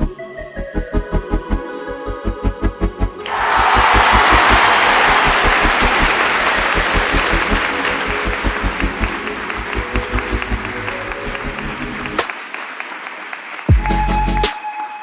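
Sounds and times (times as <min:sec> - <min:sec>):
applause: 0:03.2 - 0:15.0
background music with steady beat: 0:13.7 - 0:14.9.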